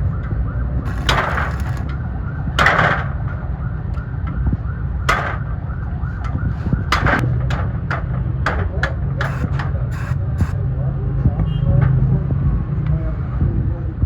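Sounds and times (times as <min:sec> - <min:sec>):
welding arc crackling: 0:00.9 - 0:02.0, 0:09.3 - 0:10.6
welding machine humming: 0:00.9 - 0:02.0, 0:09.2 - 0:10.6.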